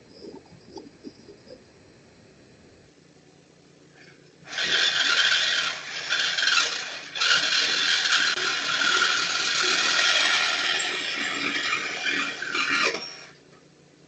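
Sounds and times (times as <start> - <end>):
power tool cutting metal pipe: 4.5 - 13.4.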